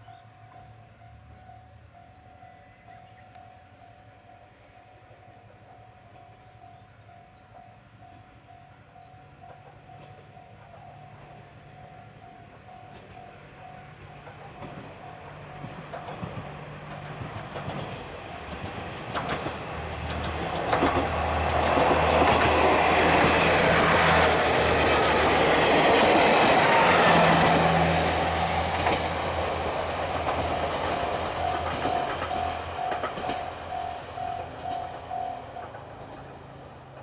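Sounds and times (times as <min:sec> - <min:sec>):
diesel train passing: 0:00.0 - 0:37.0
level-crossing warning bell: 0:00.0 - 0:37.0
wheels clicking over rail joints: 0:09.0 - 0:37.0.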